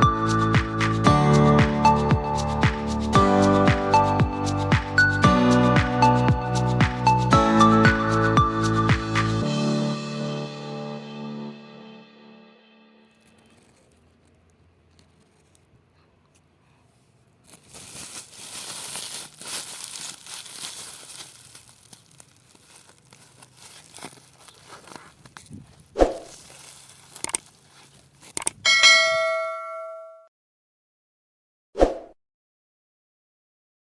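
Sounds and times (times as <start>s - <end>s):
rustling crackling noise: 13.1s - 28.6s
bell-like ding: 28.7s - 30.3s.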